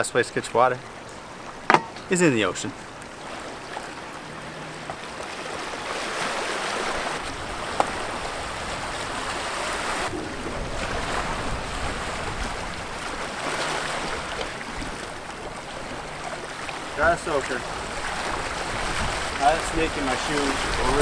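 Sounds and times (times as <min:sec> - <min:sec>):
ocean surf washing ashore: 0:00.0 - 0:21.0
wind rumbling on microphone: 0:06.4 - 0:21.0.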